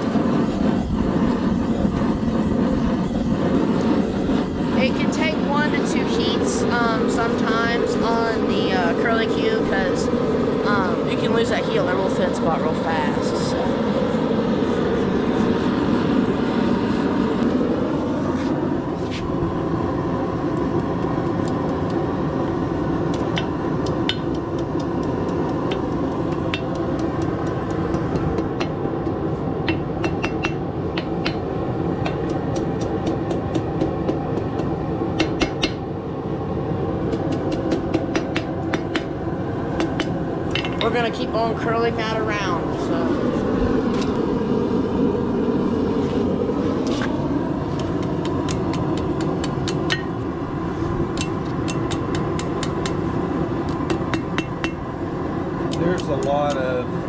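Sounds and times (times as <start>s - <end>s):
forge droning: 0.0s - 57.0s
hammer striking steel on anvil: 29.7s - 31.4s, 35.2s - 35.8s, 37.1s - 39.1s, 49.4s - 50.1s, 53.9s - 54.8s.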